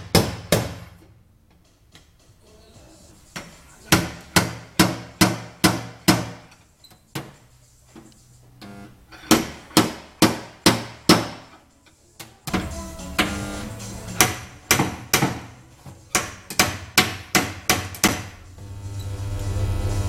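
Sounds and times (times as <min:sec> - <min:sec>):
hammer blows on car door panel: 0:03.9 - 0:06.4, 0:09.3 - 0:11.5, 0:16.1 - 0:18.3.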